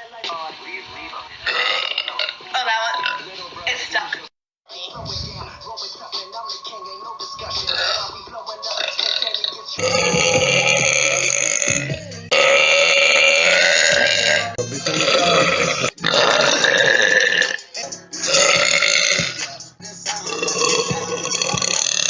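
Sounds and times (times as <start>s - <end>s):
woman belching loudly: 1.5s - 3.3s, 7.6s - 8.1s, 8.8s - 19.4s, 20.3s - 22.0s.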